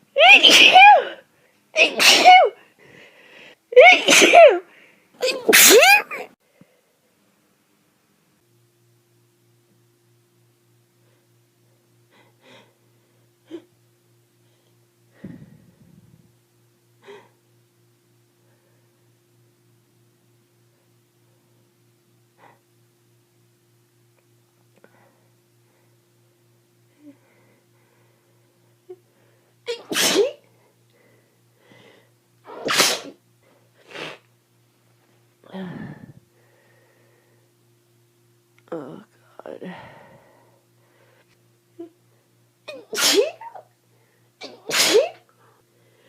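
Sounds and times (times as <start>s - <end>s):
person sneezing: 0.2s - 2.6s, 3.8s - 6.4s, 29.7s - 30.5s, 32.4s - 33.2s, 33.8s - 34.2s, 42.7s - 43.7s, 44.4s - 45.3s.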